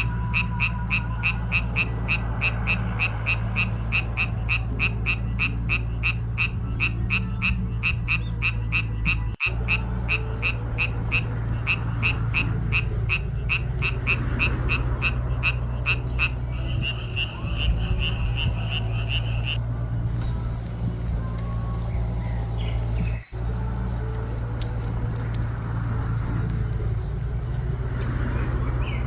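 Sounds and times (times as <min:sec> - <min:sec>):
frogs croaking: 0:00.0 - 0:19.7
low steady rumble: 0:00.0 - 0:29.0.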